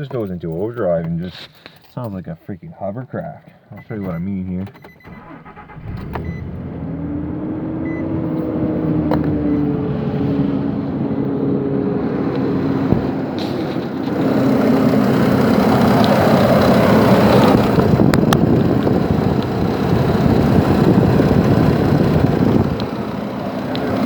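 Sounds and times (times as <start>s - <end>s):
engine cooling fan rushing: 5.1s - 24.0s
engine idling: 11.2s - 24.0s.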